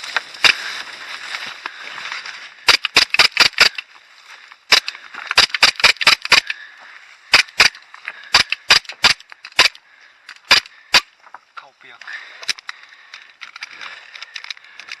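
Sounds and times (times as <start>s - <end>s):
airsoft guns firing: 2.6s - 3.8s, 4.7s - 6.6s, 7.3s - 9.8s, 10.4s - 11.1s.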